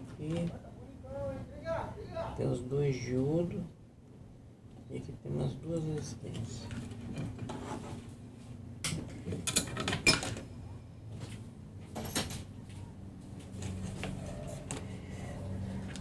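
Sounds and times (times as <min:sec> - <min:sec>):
tools clicking on a workbench: 0:08.8 - 0:10.4.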